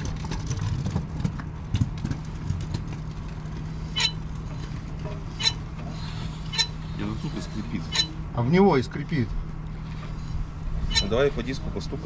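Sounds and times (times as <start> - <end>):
steady low hum: 0.0 - 12.0
short high wheel squeak: 4.0 - 4.2, 5.4 - 6.9, 7.8 - 8.2, 10.8 - 11.2.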